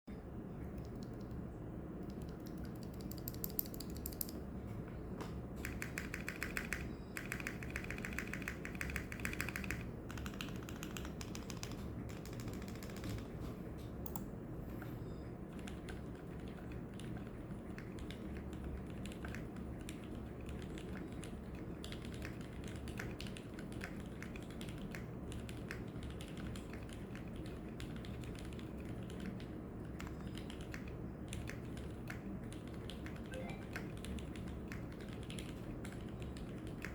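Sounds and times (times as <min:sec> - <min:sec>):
mechanical keyboard typing: 0:00.8 - 0:01.4, 0:02.0 - 0:04.4, 0:05.6 - 0:13.4, 0:15.5 - 0:36.9.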